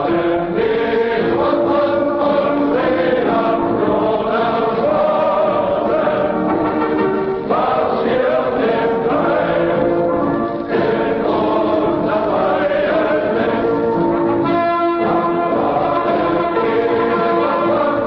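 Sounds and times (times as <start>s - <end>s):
choir singing long notes: 0.0s - 18.0s.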